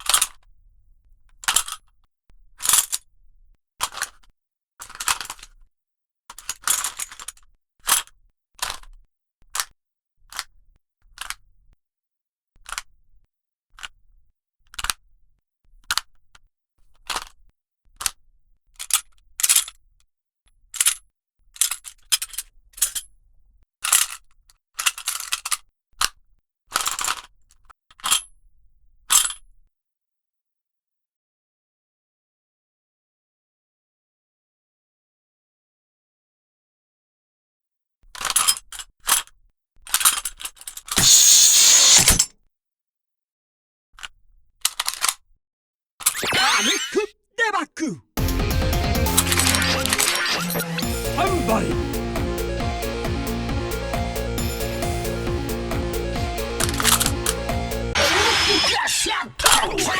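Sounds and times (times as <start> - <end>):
metal parts clicking and clinking: 3.8 - 5.6, 23.9 - 28.3, 38.2 - 39.3, 39.9 - 42.3, 44.0 - 45.2, 56.6 - 57.1.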